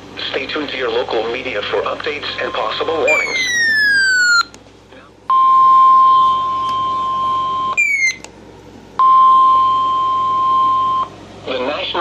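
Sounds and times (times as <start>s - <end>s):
steady electronic alarm tone: 2.5s - 4.5s, 5.3s - 8.2s, 9.0s - 11.1s.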